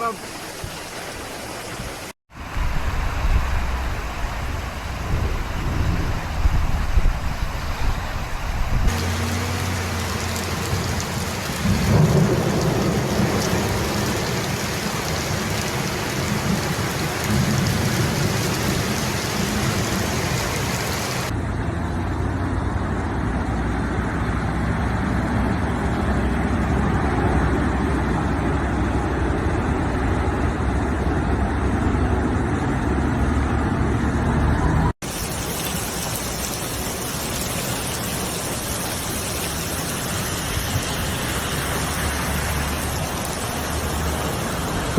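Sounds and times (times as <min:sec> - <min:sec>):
heavy rain: 0:00.0 - 0:21.4, 0:35.0 - 0:44.9
rushing water: 0:00.0 - 0:21.4, 0:35.0 - 0:44.9.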